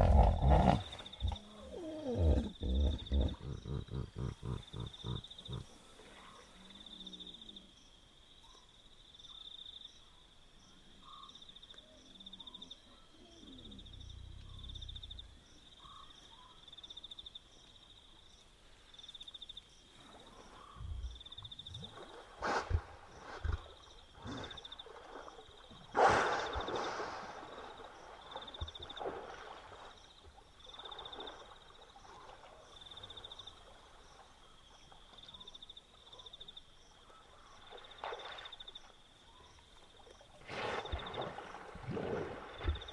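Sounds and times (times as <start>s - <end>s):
hippopotamus grunting calls: 0.0s - 6.0s
frogs calling: 0.0s - 6.6s
insect chirping: 0.0s - 42.9s.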